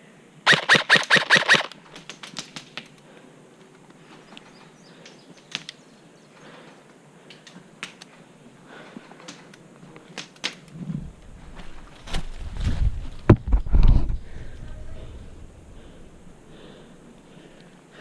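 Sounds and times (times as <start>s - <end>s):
airsoft rifle shots: 0.5s - 1.8s.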